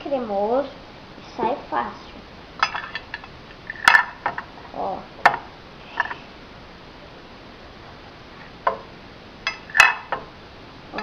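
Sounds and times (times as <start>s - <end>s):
cutlery clinking against dish: 9.5s - 10.2s.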